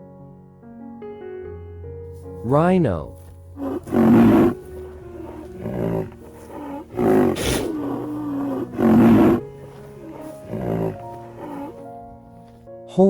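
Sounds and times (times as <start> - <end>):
rhinoceros calling: 2.5 - 12.6.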